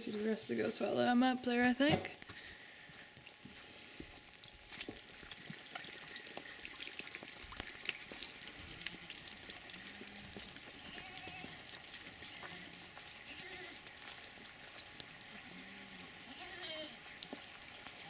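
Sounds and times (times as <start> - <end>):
footsteps: 0.0 - 6.5, 9.5 - 14.9
faint goat bleats: 9.8 - 11.7, 12.3 - 13.8, 15.3 - 17.0.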